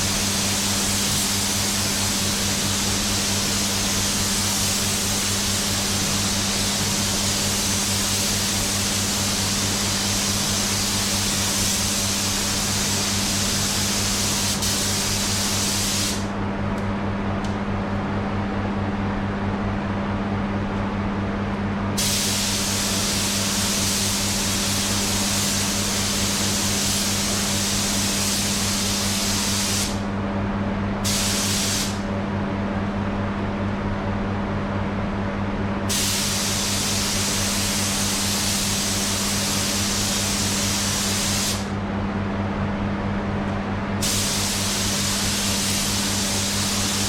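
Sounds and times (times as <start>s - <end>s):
spray gun hissing: 0.0s - 16.3s, 22.0s - 30.0s, 31.0s - 32.0s, 35.9s - 41.7s, 44.0s - 47.0s
steady low hum: 0.0s - 47.0s.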